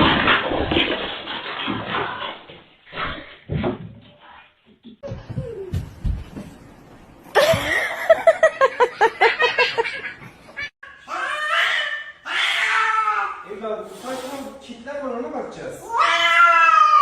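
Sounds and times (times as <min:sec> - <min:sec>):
person laughing hard: 0:07.4 - 0:10.2.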